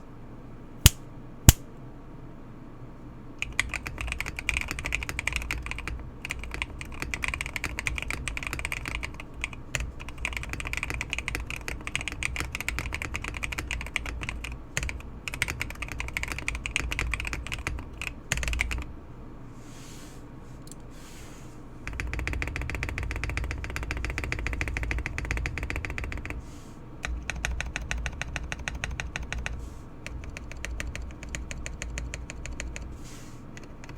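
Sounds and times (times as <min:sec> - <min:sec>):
sharp single clicks: 0:00.9 - 0:01.7
typing on mechanical keyboard: 0:03.4 - 0:18.9, 0:21.8 - 0:26.4, 0:27.0 - 0:32.9, 0:33.6 - 0:33.9.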